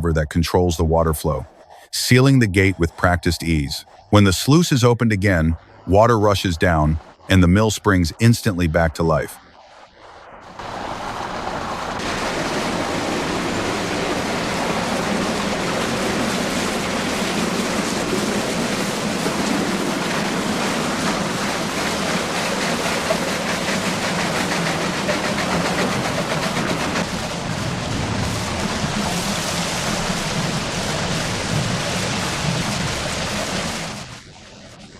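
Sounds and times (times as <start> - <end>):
water rushing through sluice: 10.4 - 34.2
mill machinery clattering: 12.0 - 29.2.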